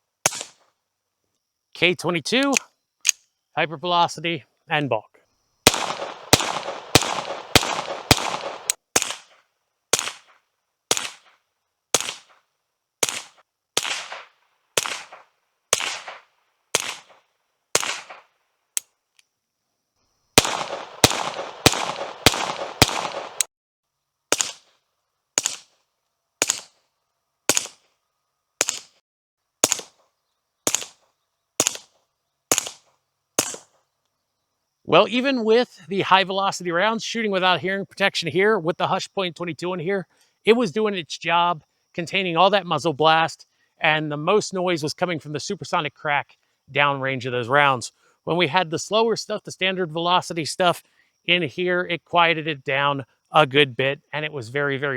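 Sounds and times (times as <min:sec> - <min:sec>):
suppressed rifle shots cracking: 0:00.2 - 0:00.6, 0:05.6 - 0:12.4, 0:13.0 - 0:18.3, 0:20.4 - 0:23.5, 0:24.3 - 0:24.7, 0:25.4 - 0:25.7, 0:26.4 - 0:26.8, 0:27.5 - 0:27.8, 0:28.6 - 0:29.0, 0:29.6 - 0:30.0, 0:30.6 - 0:31.0, 0:31.6 - 0:33.8.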